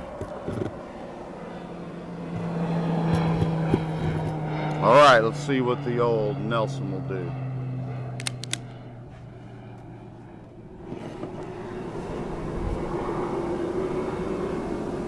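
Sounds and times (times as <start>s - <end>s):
motor drone: 0.0s - 15.0s.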